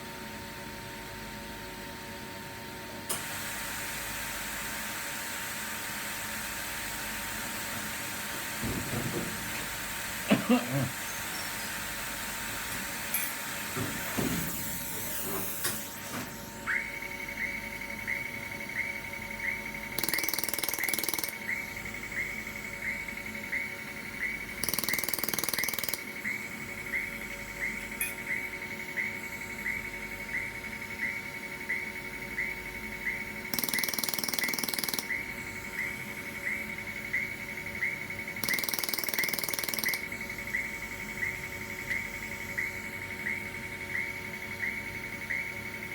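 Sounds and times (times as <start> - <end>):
laser welder ticking: 19.5 - 28.4, 33.1 - 37.3, 38.3 - 42.7.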